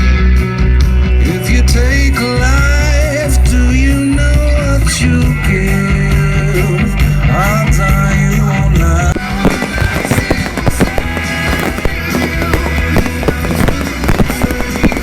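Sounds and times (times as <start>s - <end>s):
rock song with singing and guitar: 0.0s - 15.0s
fireworks banging and crackling: 7.0s - 15.0s.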